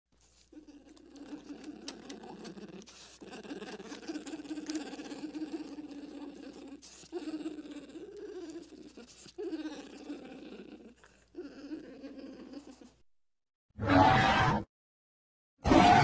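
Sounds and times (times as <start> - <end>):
dinosaur creature calls: 13.8 - 14.6, 15.6 - 16.0.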